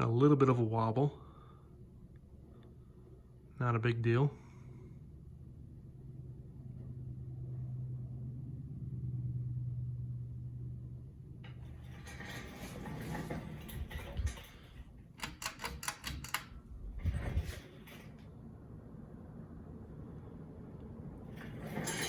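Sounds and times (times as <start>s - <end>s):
rapid rattling clicks: 12.1s - 16.7s.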